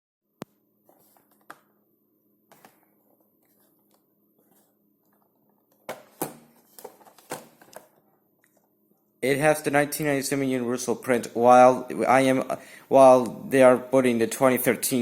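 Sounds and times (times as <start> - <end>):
box rustling: 5.9 - 8.0.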